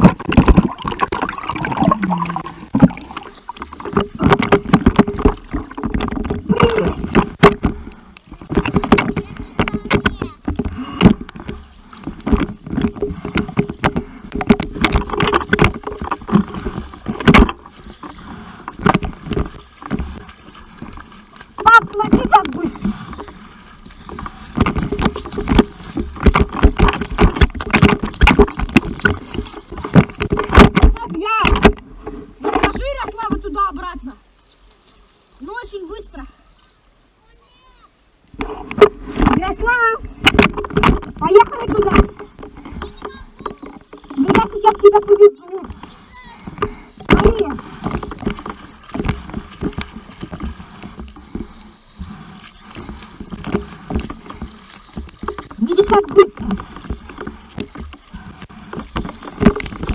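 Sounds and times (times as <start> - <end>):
water knocking against microphone: 0.0 - 36.1, 38.3 - 59.9
sea water splashing: 0.0 - 59.9.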